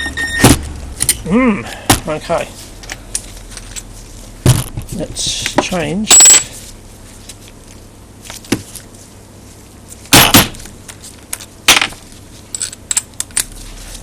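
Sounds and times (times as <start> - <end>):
metal tools clattering on workbench: 6.1 - 6.5.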